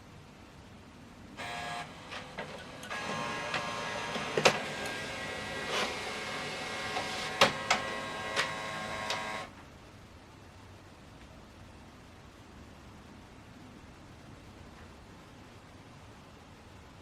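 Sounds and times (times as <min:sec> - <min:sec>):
scanner motor whine: 0:01.4 - 0:09.5
pages feeding clicks and clunks: 0:02.0 - 0:09.5.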